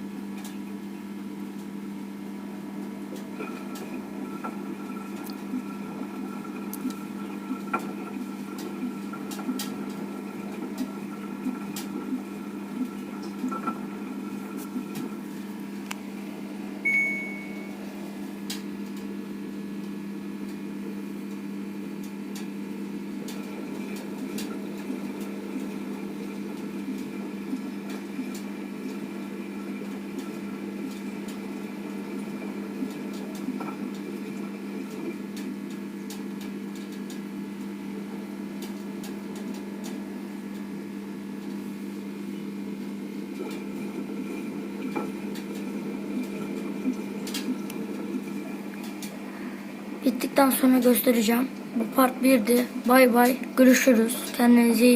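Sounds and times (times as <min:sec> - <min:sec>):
washing machine humming: 0:00.0 - 0:54.9
short high beep: 0:16.9 - 0:17.8.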